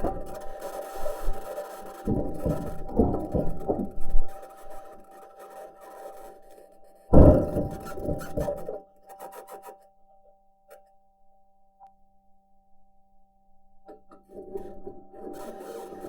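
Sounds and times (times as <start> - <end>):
high-pitched scratching and grinding: 0.0 - 6.8, 15.4 - 16.0
faint steady hum: 0.0 - 16.0.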